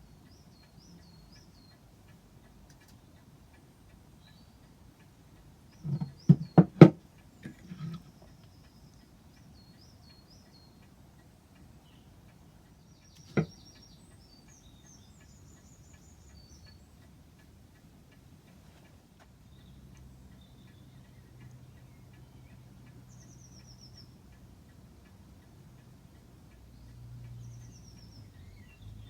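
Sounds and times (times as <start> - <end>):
birds chirping faintly: 0.0 - 29.0
sharp knocks: 5.9 - 8.0.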